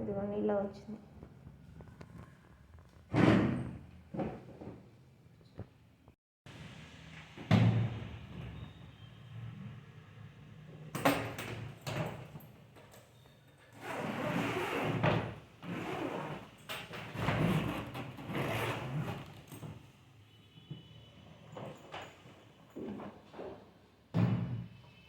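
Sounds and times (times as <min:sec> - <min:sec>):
suitcase scraping and rustling: 0:13.8 - 0:19.7.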